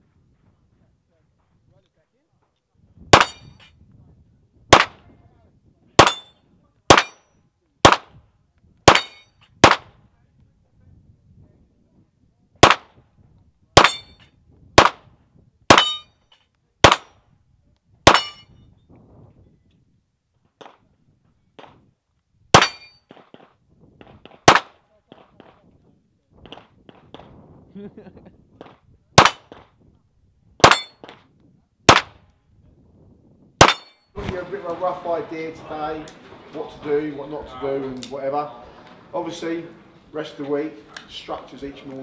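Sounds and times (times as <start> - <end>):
pistol shots: 3.1 - 3.5, 4.7 - 5.0, 6.0 - 6.3, 6.9 - 7.2, 7.8 - 8.2, 8.9 - 10.0, 12.6 - 13.0, 13.8 - 14.2, 14.8 - 15.1, 15.7 - 16.0, 16.8 - 17.1, 18.1 - 18.4, 22.5 - 23.5, 24.2 - 25.6, 28.6 - 29.7, 30.6 - 31.2, 31.9 - 32.2, 33.6 - 33.9
distant gunshots: 4.7 - 5.0, 8.9 - 9.9, 14.8 - 15.1, 16.8 - 17.1, 22.6 - 25.6, 28.6 - 29.7, 31.9 - 32.2.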